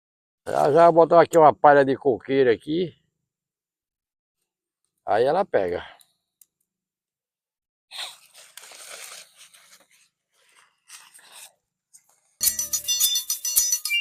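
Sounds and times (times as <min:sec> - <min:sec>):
dry straw crunching: 0:08.1 - 0:11.5.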